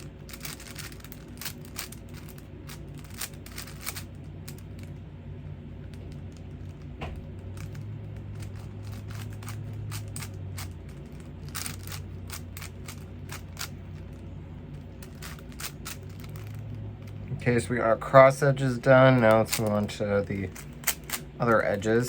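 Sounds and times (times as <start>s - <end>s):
steady low hum: 0.0s - 22.0s
puzzle cube clicking: 3.0s - 4.8s, 7.6s - 14.2s.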